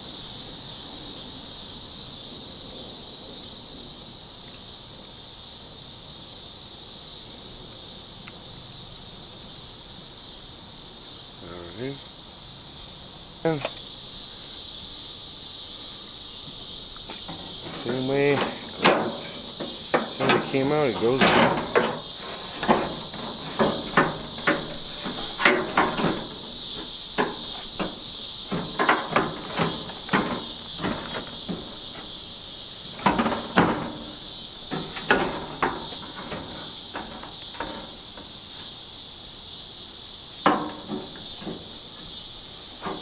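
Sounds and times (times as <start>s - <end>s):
insects droning: 0.0s - 43.0s
parts knocking and clicking: 17.0s - 38.7s, 40.4s - 42.1s, 42.7s - 43.0s.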